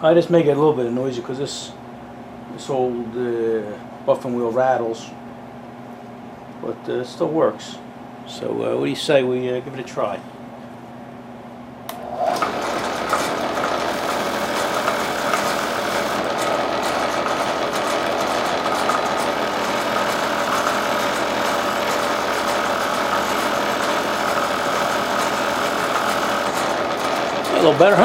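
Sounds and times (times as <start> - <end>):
bench buffer motor running: 11.9 - 28.0
buffing wheel rattling: 12.0 - 28.0.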